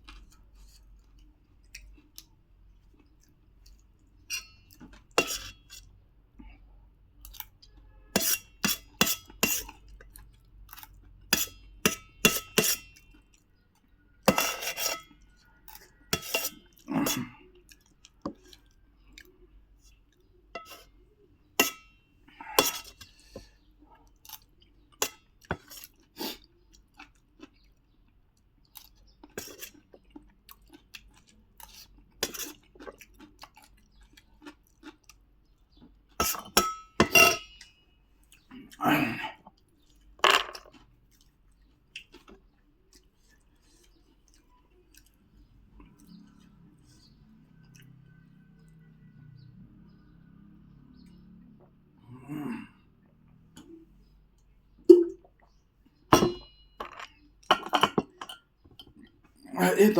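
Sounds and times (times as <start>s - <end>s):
chewing: 0.0s - 5.9s, 9.2s - 11.7s, 15.0s - 21.2s, 22.4s - 36.6s, 38.2s - 49.1s.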